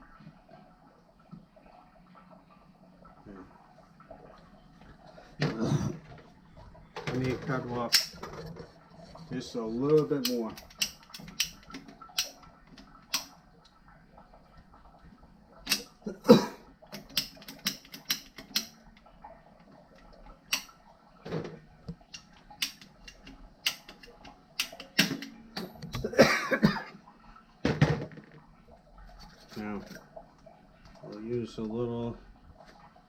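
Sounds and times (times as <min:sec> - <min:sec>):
pipe cutter clicks and knocks: 0:22.6 - 0:26.1.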